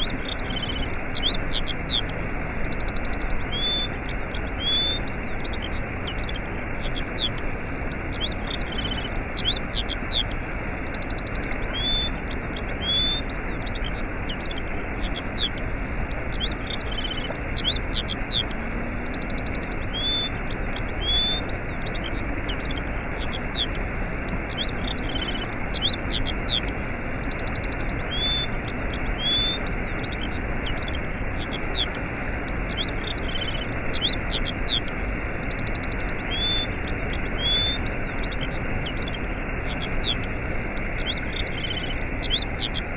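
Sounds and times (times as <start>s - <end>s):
songbirds chirping and trilling: 0.0s - 42.9s
waterfall rushing: 0.0s - 42.9s.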